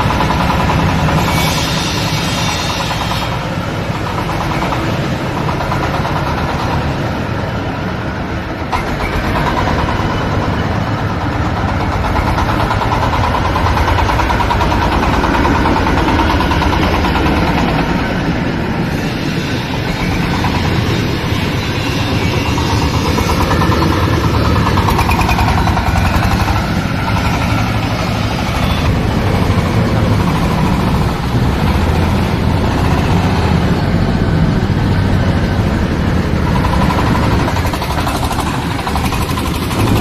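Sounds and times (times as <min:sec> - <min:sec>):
machine knock: 0:00.0 - 0:07.2, 0:08.6 - 0:18.1
engine drone: 0:00.0 - 0:40.0
mechanical rattle: 0:36.4 - 0:40.0.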